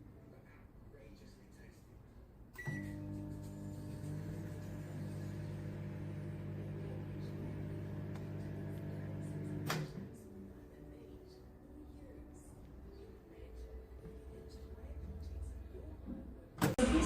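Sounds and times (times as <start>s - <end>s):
microwave oven humming: 2.6s - 10.2s.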